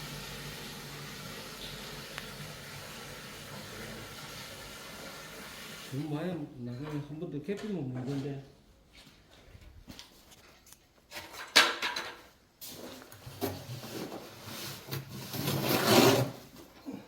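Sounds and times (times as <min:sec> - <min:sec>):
tool scraping wet mortar: 0:13.4 - 0:16.5.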